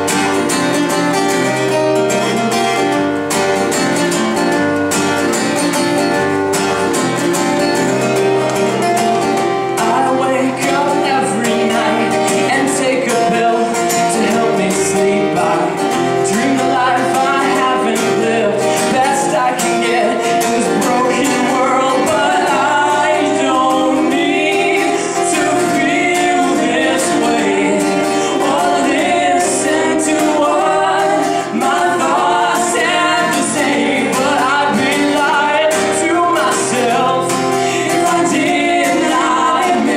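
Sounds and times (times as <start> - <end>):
strummed guitar: 0.0 - 39.9
person singing: 9.8 - 39.9.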